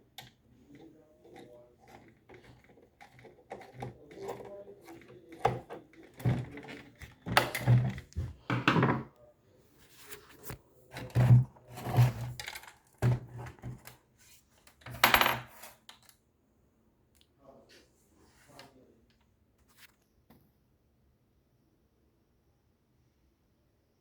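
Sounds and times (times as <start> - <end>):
objects knocking and clattering: 0.0 - 9.2, 10.9 - 14.0, 14.8 - 15.7.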